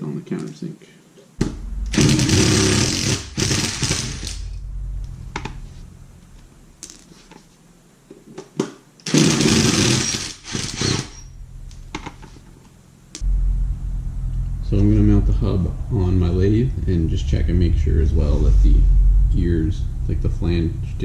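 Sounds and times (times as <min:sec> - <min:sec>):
handheld power tool running: 0:01.9 - 0:04.5, 0:09.1 - 0:11.2.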